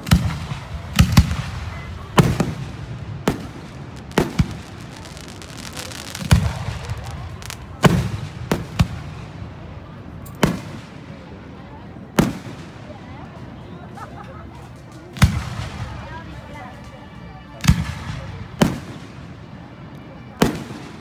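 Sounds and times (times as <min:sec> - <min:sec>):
low rumbling echo: 0:00.0 - 0:10.2
fireworks bangs: 0:00.0 - 0:11.5, 0:12.2 - 0:13.5, 0:14.9 - 0:16.6.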